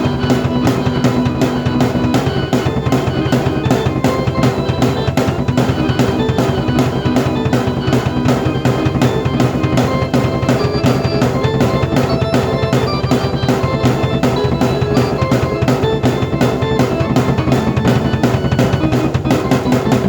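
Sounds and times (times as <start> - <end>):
drum kit beat: 0.0 - 20.0
sustained keyboard notes: 0.0 - 20.0.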